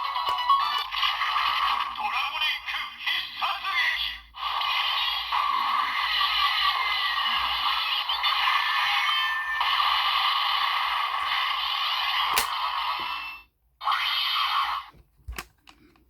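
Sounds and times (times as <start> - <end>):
electronic toy sound effect: 0.0 - 2.9, 3.8 - 14.9
plastic click: 12.3 - 12.6.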